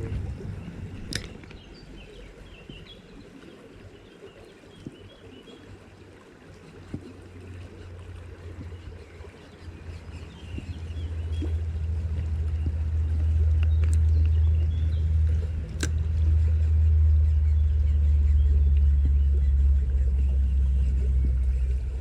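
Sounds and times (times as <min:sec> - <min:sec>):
low rumble: 0:00.0 - 0:03.3, 0:08.0 - 0:22.0
stream flowing over stones: 0:00.0 - 0:16.6.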